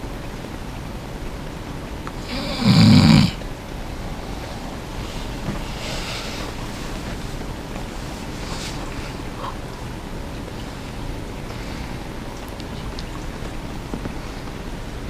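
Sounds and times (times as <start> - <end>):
steady background hiss: 0.0 - 15.0
person snoring: 2.2 - 3.4
faint breath: 2.2 - 9.8, 11.4 - 12.4.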